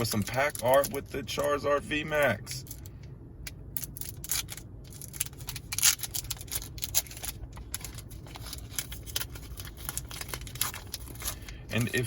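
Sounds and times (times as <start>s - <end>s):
foil wrapper crinkling: 3.8s - 12.0s.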